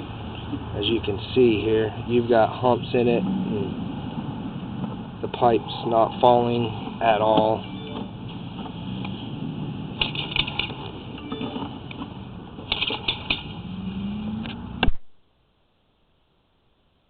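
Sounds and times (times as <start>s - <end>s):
clicks and knocks: 10.0s - 13.5s.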